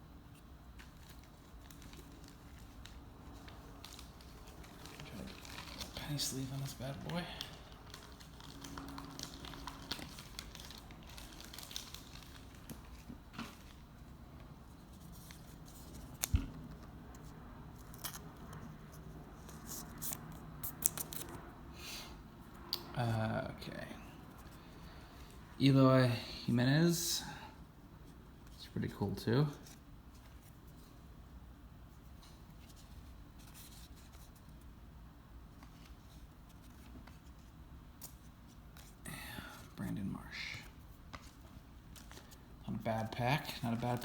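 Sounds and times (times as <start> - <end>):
low background hum: 0.0 - 44.0
cards and plastic sleeves rustling: 0.7 - 21.4, 32.1 - 34.7, 35.4 - 44.0
cards scraping and rustling: 43.0 - 44.0.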